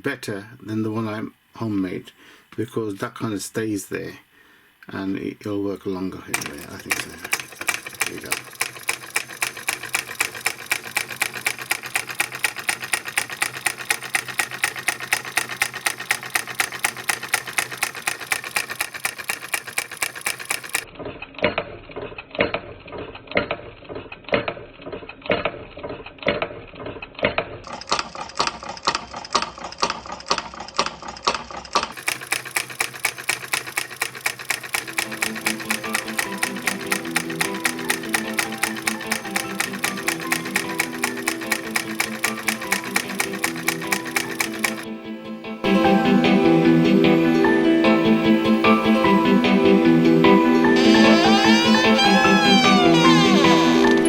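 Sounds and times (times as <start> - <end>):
solenoid engine clatter: 6.4 - 44.9
music: 34.8 - 54.0.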